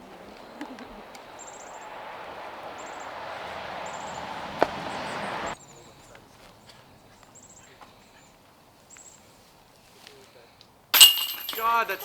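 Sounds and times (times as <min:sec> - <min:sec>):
rushing noise: 0:00.0 - 0:05.6
high bird chirps: 0:00.0 - 0:05.8.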